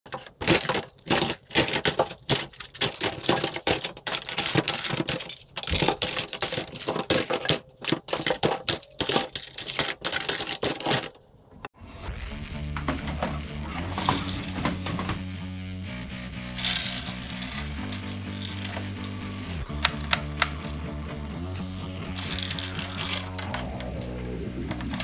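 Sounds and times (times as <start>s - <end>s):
plastic toy guns clicking: 16.5s - 20.8s, 22.1s - 25.0s.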